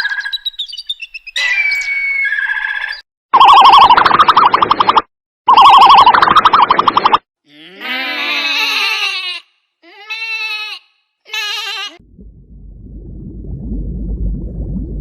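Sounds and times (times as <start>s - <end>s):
farm animal bleating: 7.5s - 12.0s
low rough noise: 12.0s - 15.0s.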